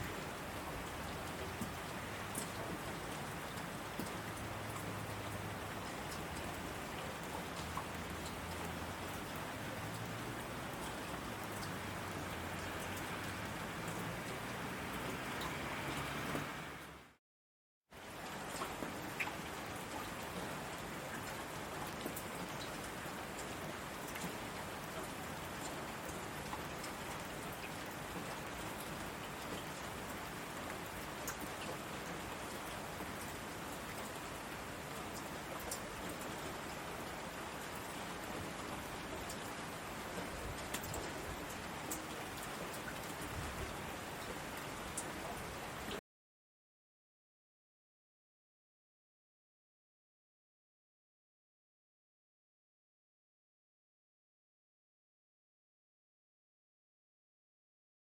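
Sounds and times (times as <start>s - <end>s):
heavy rain on asphalt: 0.0s - 17.2s, 18.0s - 46.0s
raindrops splashing close by: 0.0s - 17.2s, 18.0s - 46.0s.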